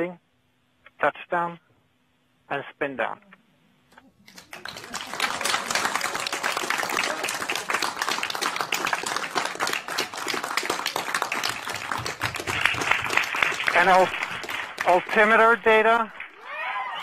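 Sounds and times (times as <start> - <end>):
crowd applauding: 4.2 - 17.0.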